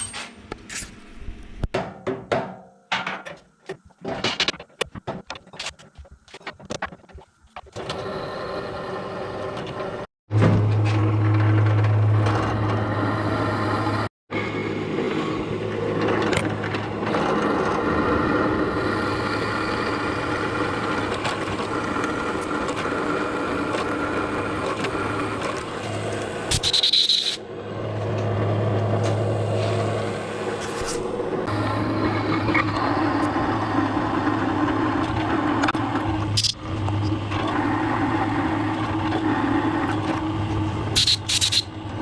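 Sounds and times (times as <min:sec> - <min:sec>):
short high-pitched burst: 0:26.5 - 0:27.4.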